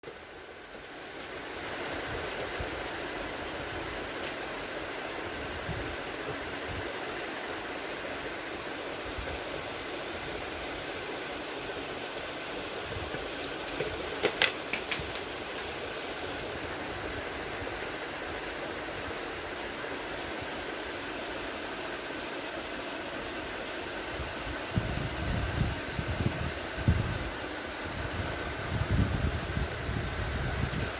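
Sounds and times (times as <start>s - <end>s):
steady whooshing fan noise: 0.0s - 30.9s.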